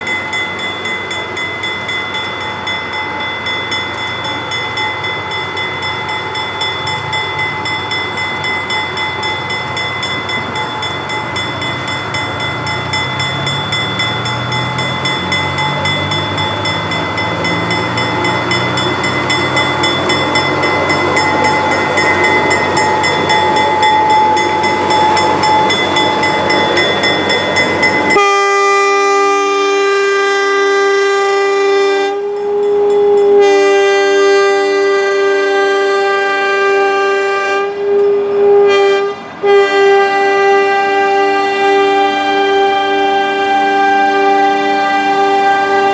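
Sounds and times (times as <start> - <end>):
railcar running noise: 0.0 - 45.9
railcar horn chord: 10.6 - 45.9.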